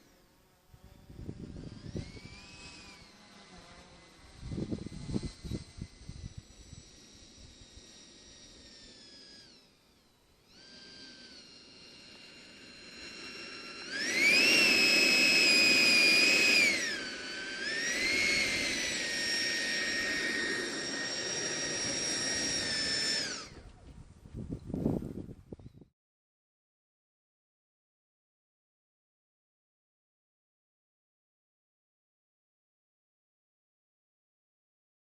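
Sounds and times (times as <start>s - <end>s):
electric ducted fan whining: 0.0s - 25.9s.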